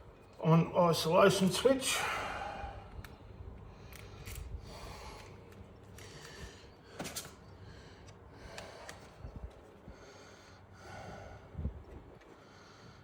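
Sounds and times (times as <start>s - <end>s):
handling noise with clicks: 2.9s - 6.4s, 7.0s - 9.8s.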